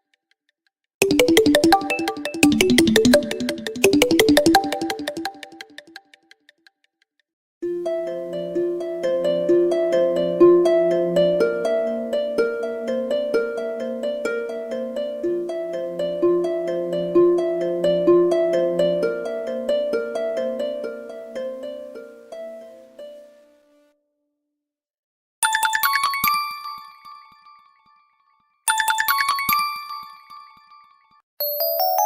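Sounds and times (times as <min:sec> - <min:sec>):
phone ringtone melody: 0:01.0 - 0:05.8, 0:31.4 - 0:32.0.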